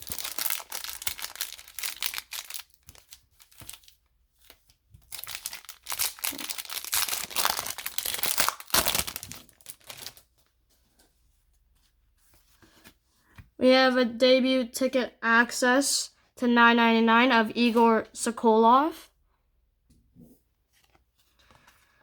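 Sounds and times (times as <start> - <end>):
foil wrapper crinkling and tearing: 0.0 - 10.3.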